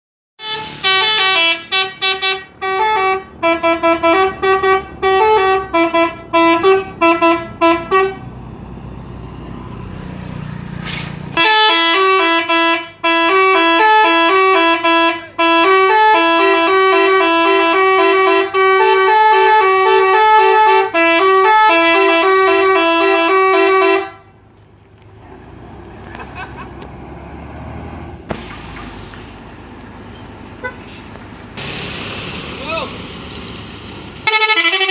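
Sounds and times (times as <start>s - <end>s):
multi-tone musical air horn: 0.4s - 8.2s, 11.4s - 24.3s, 34.2s - 34.9s.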